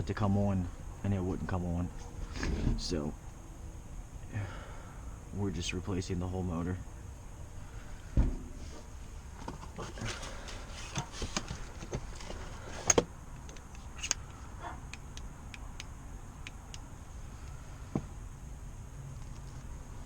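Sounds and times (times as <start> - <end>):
tools and parts clicking and rattling: 9.4 - 17.6.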